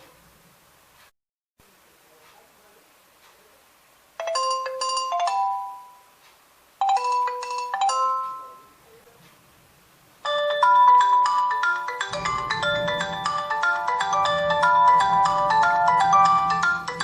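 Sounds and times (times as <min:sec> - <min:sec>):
phone alert chime: 0:04.2 - 0:06.0, 0:06.8 - 0:08.8, 0:10.3 - 0:17.0
ringtone melody: 0:04.2 - 0:06.1, 0:06.8 - 0:08.8, 0:10.2 - 0:17.0.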